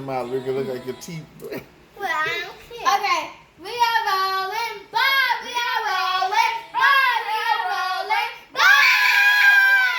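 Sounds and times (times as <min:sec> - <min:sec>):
child singing: 0:02.0 - 0:09.9.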